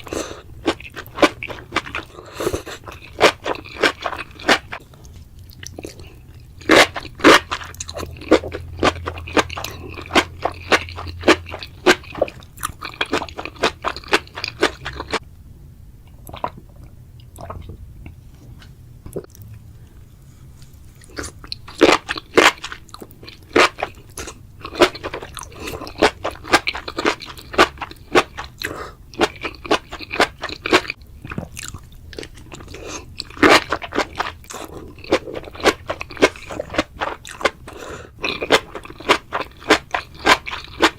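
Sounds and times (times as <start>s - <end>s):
crunching and chewing: 0.0s - 15.2s, 20.6s - 40.9s.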